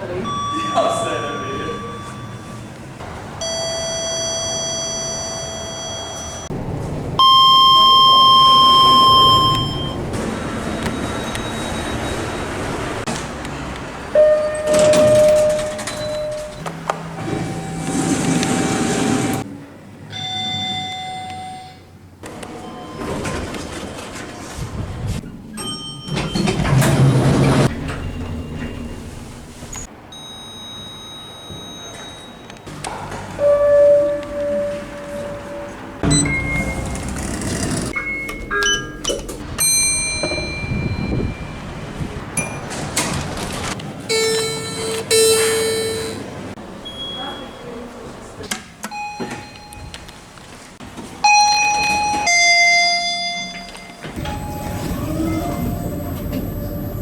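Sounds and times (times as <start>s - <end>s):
faint beeps: 0.0s - 6.5s, 7.2s - 10.1s, 44.1s - 47.8s
elevator arrival chime: 0.0s - 13.1s, 14.1s - 19.4s, 20.1s - 23.5s, 25.5s - 43.2s, 44.1s - 47.9s, 48.9s - 50.3s, 51.2s - 57.0s
car noise: 0.0s - 19.5s, 32.7s - 46.8s
elevator car hum: 0.0s - 57.0s
steady beep tone: 0.1s - 2.8s, 7.2s - 10.1s, 44.1s - 46.3s.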